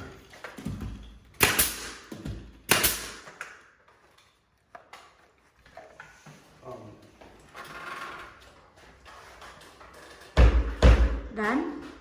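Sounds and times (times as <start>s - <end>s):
pneumatic nail gun firing: 1.4s - 3.6s.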